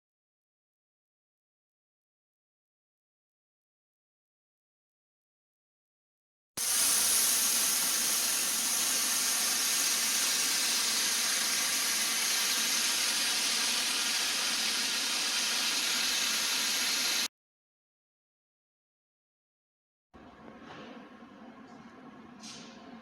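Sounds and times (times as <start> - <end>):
steady high hissing: 6.6 - 17.3.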